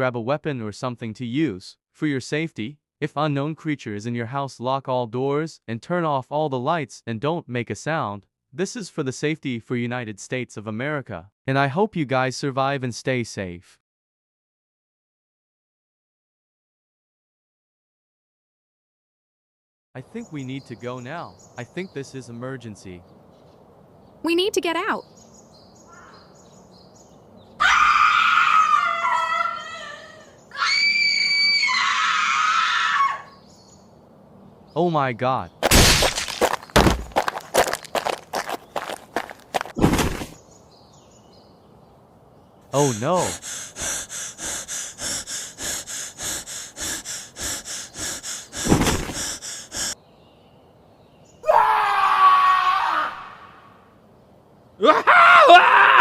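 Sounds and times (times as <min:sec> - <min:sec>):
long loud screams: 0:27.6 - 0:33.4, 0:51.4 - 0:53.8, 0:54.8 - 0:56.0
loud drawn-out cry: 0:27.6 - 0:33.4, 0:42.8 - 0:50.0, 0:51.4 - 0:53.8, 0:54.8 - 0:56.0
person panting hard: 0:36.4 - 0:39.7, 0:42.8 - 0:50.0.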